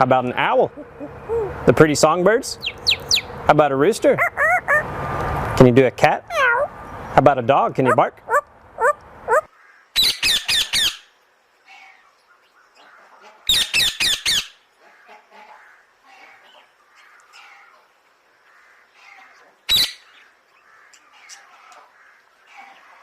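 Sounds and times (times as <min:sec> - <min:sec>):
parrot squawking: 0:04.0 - 0:05.0, 0:06.2 - 0:06.9, 0:07.7 - 0:11.0.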